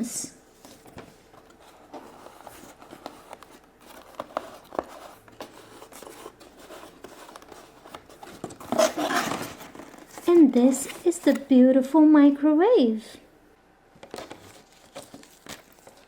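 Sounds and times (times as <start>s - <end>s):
paper sheet rustling: 0.6s - 11.4s, 14.1s - 16.0s.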